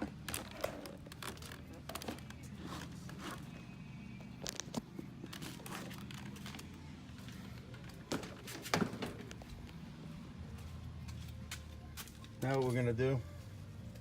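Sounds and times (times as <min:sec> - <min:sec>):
plastic clicks and crinkles: 0:00.2 - 0:02.4.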